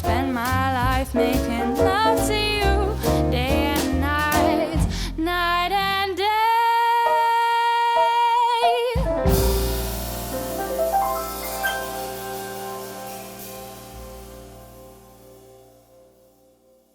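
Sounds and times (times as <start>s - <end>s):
drums: 0.0s - 6.1s, 8.9s - 16.1s
double bass: 0.0s - 6.4s, 9.0s - 16.0s
woman singing: 0.0s - 9.5s
piano: 0.0s - 16.9s
cymbal crash: 9.3s - 16.0s.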